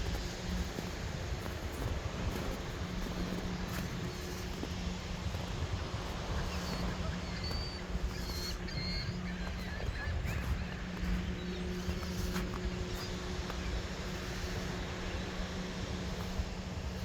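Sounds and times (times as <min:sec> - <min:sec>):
bird chirps: 0:06.3 - 0:12.3.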